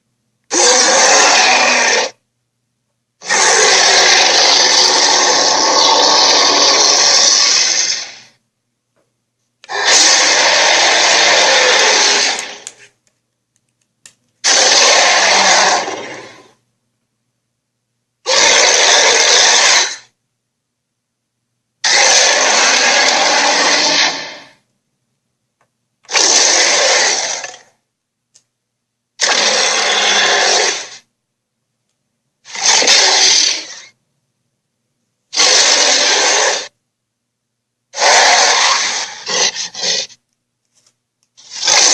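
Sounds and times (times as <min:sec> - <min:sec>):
dinosaur roars: 0:00.5 - 0:02.2, 0:03.2 - 0:08.3, 0:09.7 - 0:12.8, 0:14.4 - 0:16.6, 0:18.3 - 0:20.1, 0:21.8 - 0:24.6, 0:26.1 - 0:27.7, 0:29.2 - 0:31.0, 0:32.5 - 0:33.9, 0:35.4 - 0:36.7, 0:38.0 - 0:40.2.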